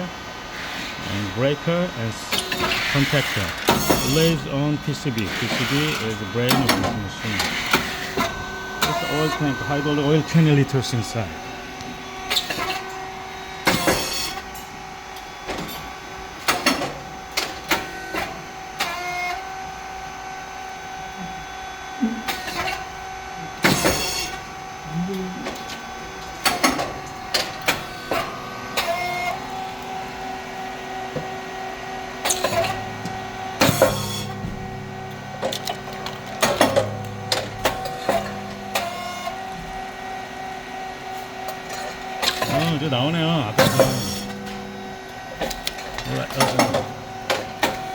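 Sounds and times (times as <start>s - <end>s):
machine motor humming: 0.0s - 47.9s
machine clacks and pops: 35.4s - 39.0s, 45.4s - 47.9s.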